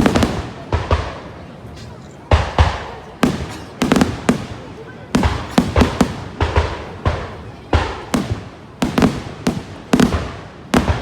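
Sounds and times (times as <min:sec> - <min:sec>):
firework shells bursting: 0:00.0 - 0:11.0.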